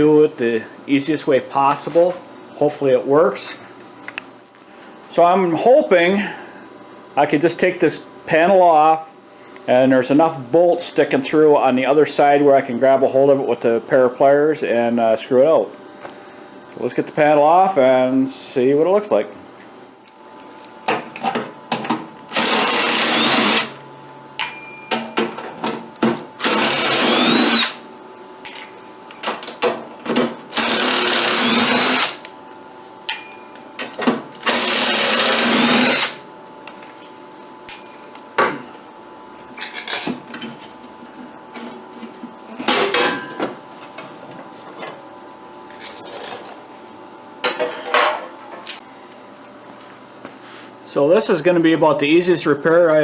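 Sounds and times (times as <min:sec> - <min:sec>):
power drill running: 0:22.3 - 0:23.8, 0:26.4 - 0:27.8, 0:30.5 - 0:32.2, 0:34.4 - 0:36.2.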